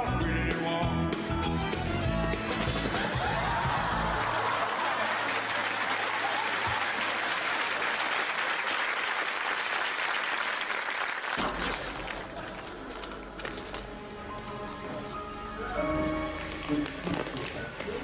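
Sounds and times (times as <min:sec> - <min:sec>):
audience applauding: 0:02.8 - 0:12.3.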